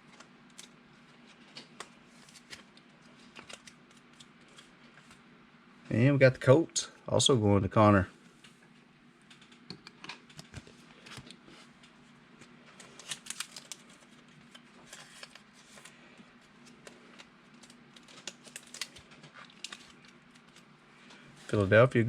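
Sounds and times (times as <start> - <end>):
trading cards rustling: 0.2 - 5.2, 12.7 - 20.7.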